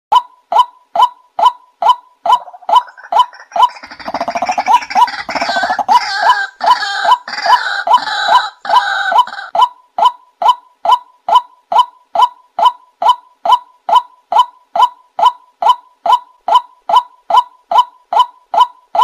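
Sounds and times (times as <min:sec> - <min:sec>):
harsh raspy bird chorus: 0:02.4 - 0:09.5.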